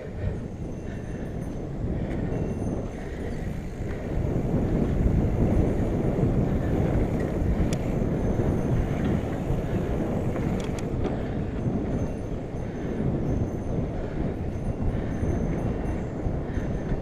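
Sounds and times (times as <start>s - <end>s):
bike tyres rumbling on dirt: 0.0s - 17.0s
wind on microphone: 0.0s - 17.0s.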